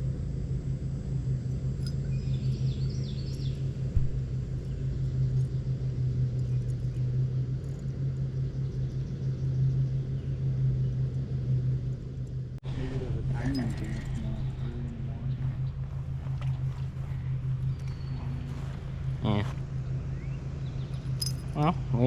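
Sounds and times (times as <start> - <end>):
low hum and rumble: 0.0 - 22.0.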